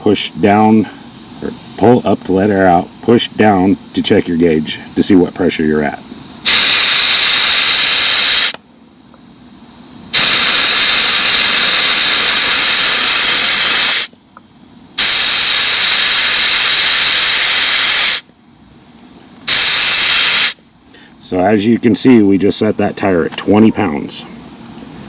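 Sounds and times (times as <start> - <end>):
air hissing out of a tyre: 0.8 - 2.0, 6.0 - 8.6, 9.3 - 14.2, 14.9 - 18.3, 19.4 - 21.2.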